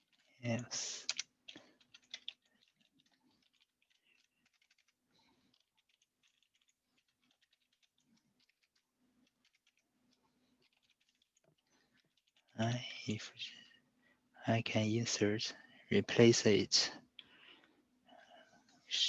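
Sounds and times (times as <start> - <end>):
computer keyboard typing: 0.0 - 9.9, 10.6 - 12.6.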